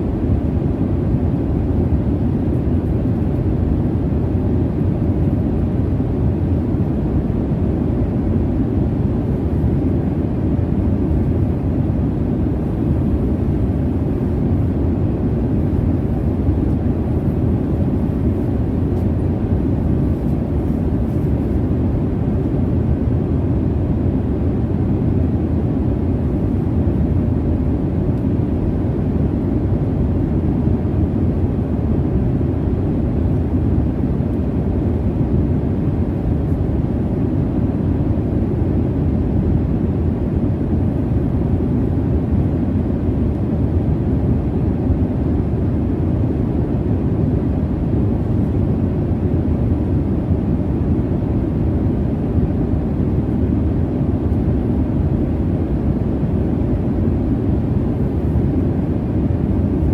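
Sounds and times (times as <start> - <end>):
jet engine rumble in cabin: 0.0 - 59.9.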